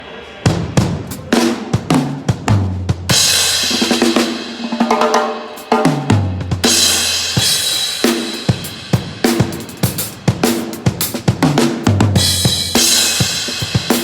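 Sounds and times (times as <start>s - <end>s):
tom fill: 0.4s - 14.0s
snare and kick drum strokes: 0.5s - 14.0s
cymbal crashes: 6.6s - 10.3s.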